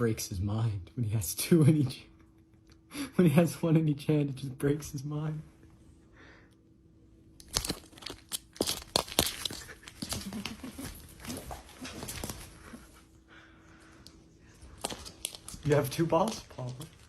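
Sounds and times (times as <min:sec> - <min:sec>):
dog handling balls: 0:07.4 - 0:13.0, 0:14.6 - 0:17.0.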